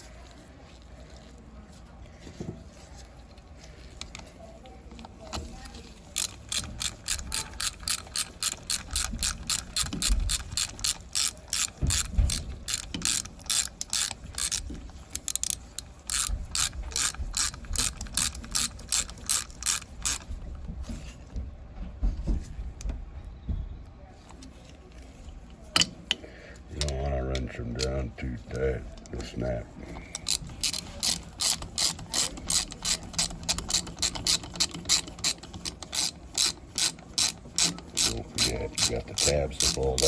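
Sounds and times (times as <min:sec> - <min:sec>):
ratchet wrench clicking: 0:06.0 - 0:20.3, 0:30.0 - 0:40.0.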